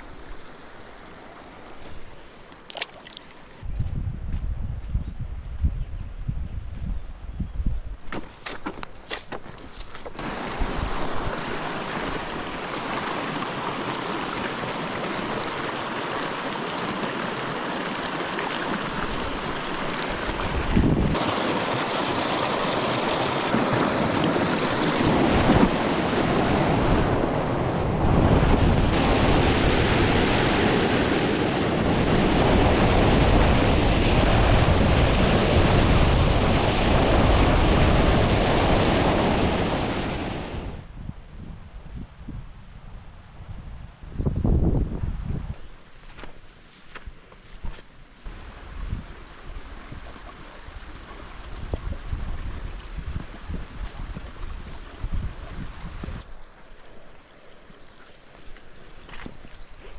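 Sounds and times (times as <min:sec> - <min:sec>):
wind buffeting microphone: 0:03.6 - 0:08.1, 0:10.2 - 0:22.4, 0:23.1 - 0:45.7, 0:48.3 - 0:56.4
fast-flowing stream rushing: 0:10.2 - 0:28.2.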